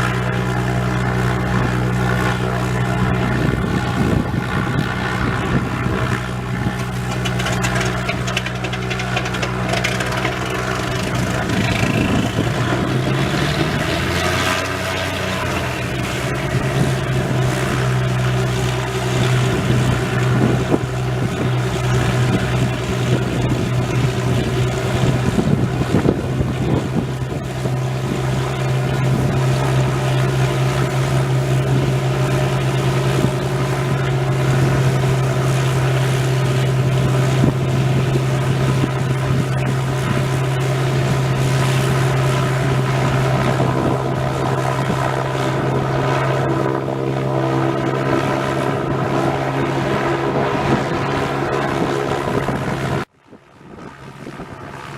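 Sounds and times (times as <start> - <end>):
propeller aircraft engines droning: 0.0 - 54.9.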